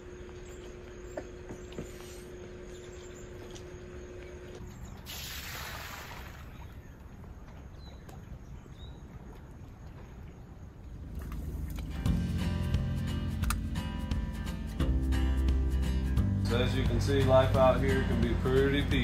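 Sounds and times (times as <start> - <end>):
faint steady hum: 0.0 - 12.1
low steady rumble: 9.2 - 19.0.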